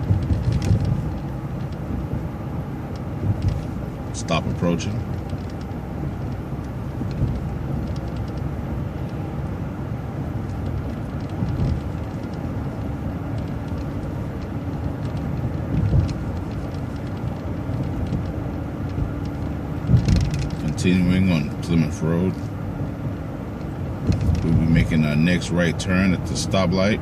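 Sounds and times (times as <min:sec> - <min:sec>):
small rattles: 0:00.0 - 0:02.0, 0:10.4 - 0:20.8, 0:23.6 - 0:24.7
bus engine and road rumble: 0:00.0 - 0:27.0.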